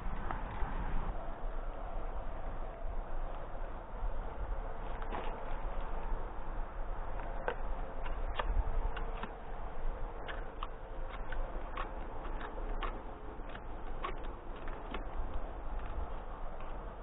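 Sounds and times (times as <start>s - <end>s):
steady low rumble: 0.0s - 17.0s
light clicks and taps: 10.2s - 16.8s.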